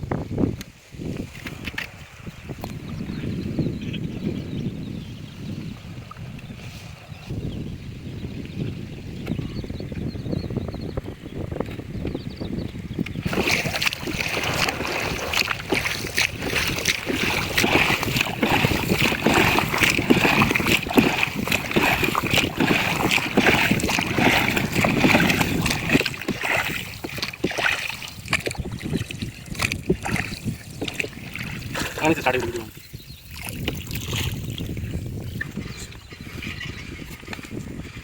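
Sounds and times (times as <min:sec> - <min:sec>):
water splashing and rushing: 0:13.1 - 0:35.9.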